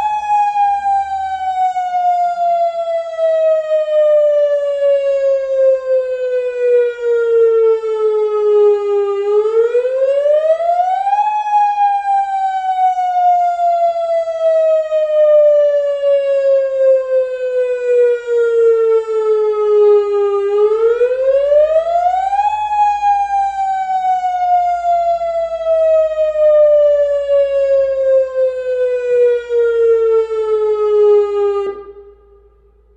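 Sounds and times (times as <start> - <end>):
warning siren wailing: 0.0 - 32.9.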